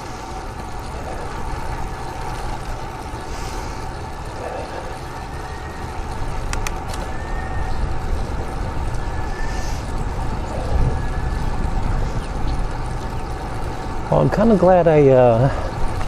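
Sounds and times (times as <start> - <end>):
tyre and road noise: 0.0 - 16.0
sharp clicks: 6.4 - 7.1
wind on microphone: 7.1 - 13.3.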